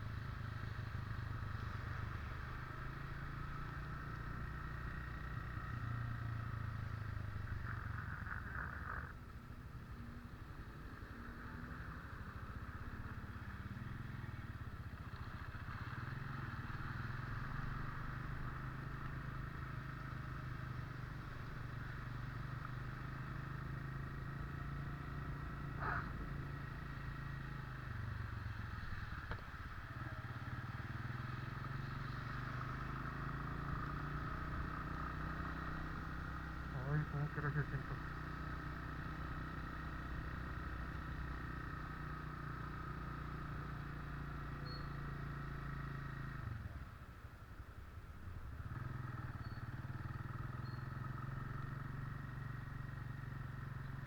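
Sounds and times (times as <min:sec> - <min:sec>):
vehicle engine running: 0:21.2 - 0:54.0.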